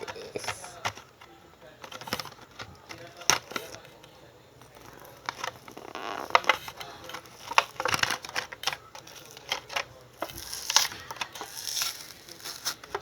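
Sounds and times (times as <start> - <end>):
packaging crackling and tearing: 4.6 - 13.0.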